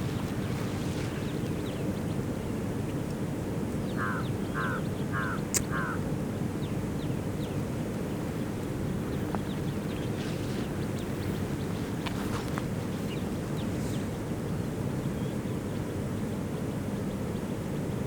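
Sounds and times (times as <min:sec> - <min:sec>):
small birds chirping: 0:00.0 - 0:02.5, 0:06.6 - 0:15.4
low outdoor rumble: 0:00.0 - 0:18.0
sharp click: 0:05.5 - 0:05.7.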